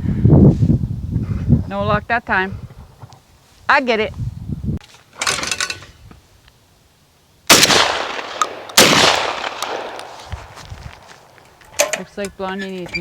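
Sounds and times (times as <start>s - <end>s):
shotgun shots echoing: 7.5s - 10.3s.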